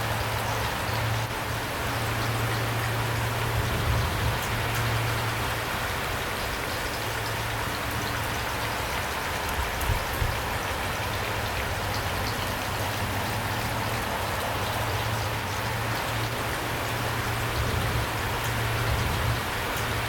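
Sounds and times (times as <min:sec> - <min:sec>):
steady rain falling: 0:00.0 - 0:20.0.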